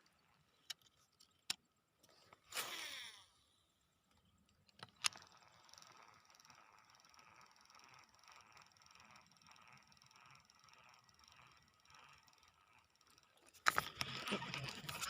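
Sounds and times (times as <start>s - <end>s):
fishing reel whirring: 2.4s - 3.5s, 4.8s - 15.0s.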